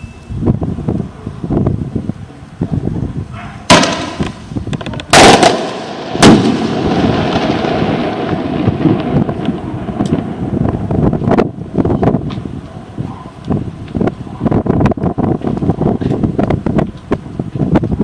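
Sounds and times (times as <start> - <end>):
firework rushing noise: 0.4 - 18.0
firework bangs: 3.6 - 16.7.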